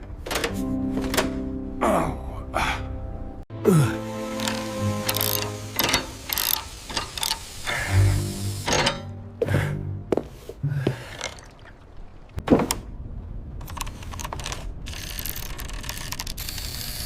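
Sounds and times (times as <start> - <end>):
mechanical clunks and knocks: 0.0 - 1.5, 4.4 - 7.4
steady hiss: 4.0 - 9.0.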